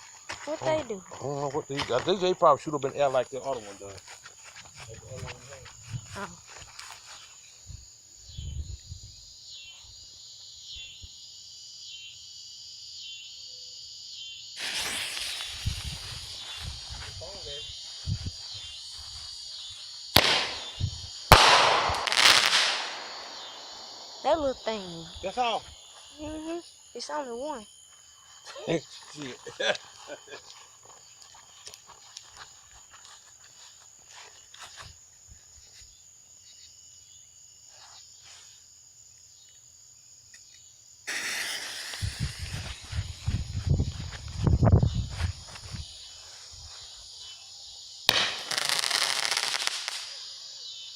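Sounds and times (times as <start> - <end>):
crickets trilling: 0.0 - 50.9
firework bangs: 14.6 - 17.3, 20.1 - 24.6, 41.1 - 43.8, 48.1 - 50.3
loud hissing rush: 14.6 - 18.2, 41.1 - 44.5
firework crackling and hissing: 14.6 - 19.5, 20.1 - 24.9, 41.0 - 46.3, 48.1 - 50.4.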